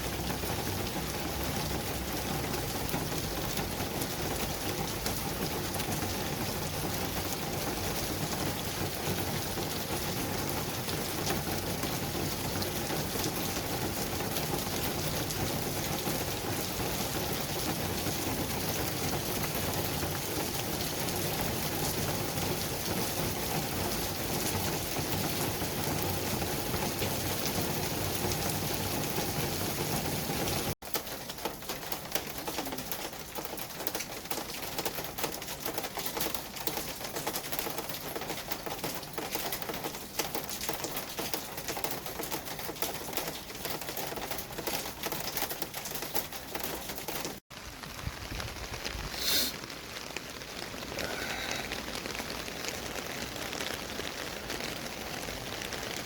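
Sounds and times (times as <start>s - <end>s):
traffic hiss: 49.1s - 49.6s.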